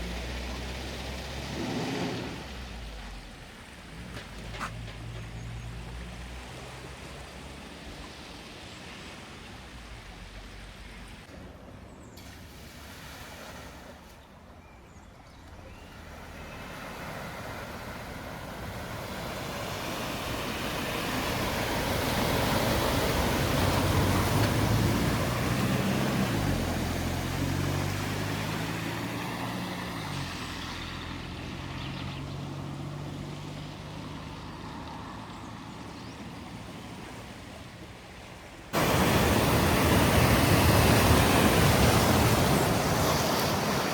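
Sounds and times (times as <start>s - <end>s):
water spray rushing: 0.0s - 5.1s, 15.9s - 31.6s, 38.7s - 43.9s
vehicle engine passing: 0.0s - 7.8s, 15.9s - 37.0s, 38.8s - 43.9s.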